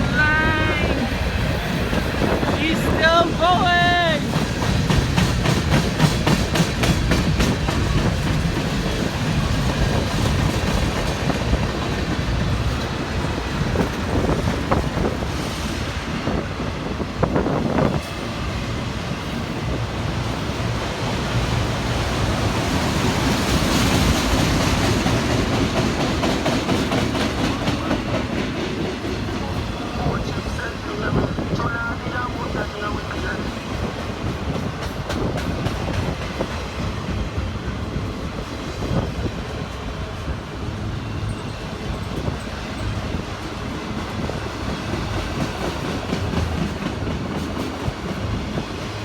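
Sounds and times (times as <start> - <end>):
train wheels clattering over rail joints: 4.3 - 16.4, 19.4 - 29.7, 33.8 - 40.4, 41.3 - 49.0.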